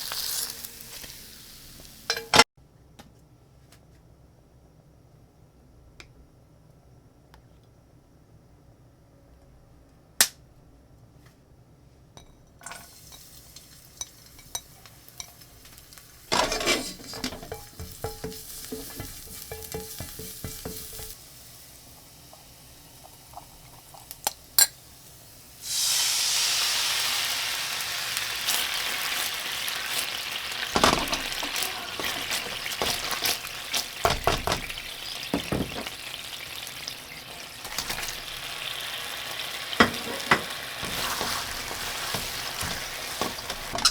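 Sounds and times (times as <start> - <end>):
frying pan sizzling: 0.0 - 2.5, 12.6 - 43.9
kitchen utensils clinking: 2.1 - 2.4, 16.3 - 21.2, 29.9 - 38.4, 39.8 - 43.9
spatula knocking against pan: 16.4 - 21.2, 34.0 - 36.0, 39.8 - 41.1.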